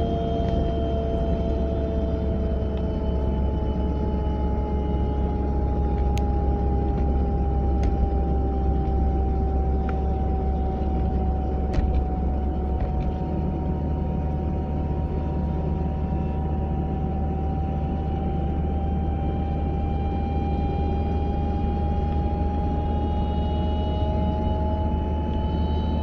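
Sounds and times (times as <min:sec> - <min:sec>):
car road rumble: 0:00.0 - 0:16.3
whine rising in pitch: 0:00.0 - 0:26.0.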